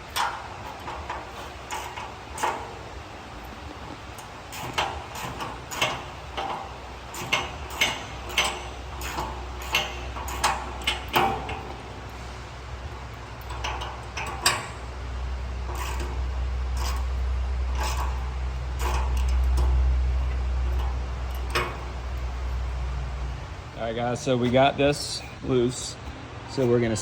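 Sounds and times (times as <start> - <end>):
wrench clicking on metal: 4.2 - 11.8.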